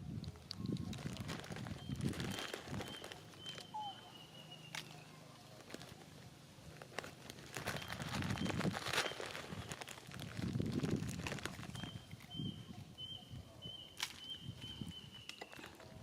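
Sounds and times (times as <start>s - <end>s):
rustling: 0.2s - 4.0s, 4.7s - 12.5s.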